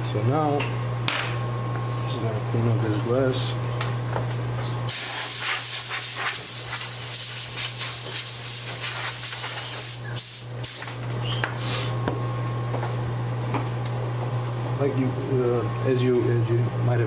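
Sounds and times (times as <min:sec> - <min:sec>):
compressed air hissing: 0:04.9 - 0:10.9, 0:11.6 - 0:12.0.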